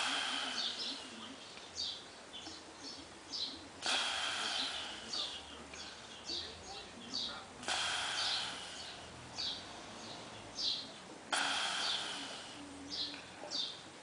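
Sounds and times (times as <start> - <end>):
man breathing heavily through mouth: 0.0 - 1.2, 3.8 - 6.0, 7.6 - 9.5, 11.3 - 12.7.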